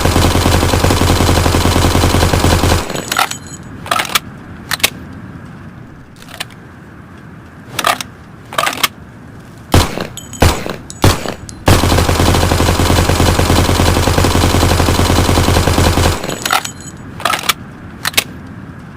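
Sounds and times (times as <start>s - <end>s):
submachine gun firing: 0.0s - 3.4s, 9.7s - 16.8s
gun clicks: 2.8s - 5.2s, 9.8s - 11.7s, 16.0s - 18.6s.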